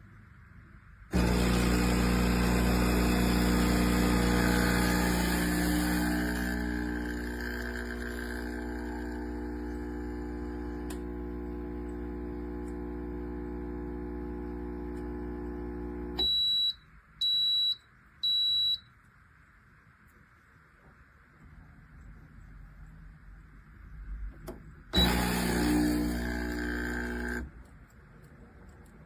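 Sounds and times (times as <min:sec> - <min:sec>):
espresso machine pump humming: 0:01.1 - 0:16.2, 0:25.0 - 0:27.5.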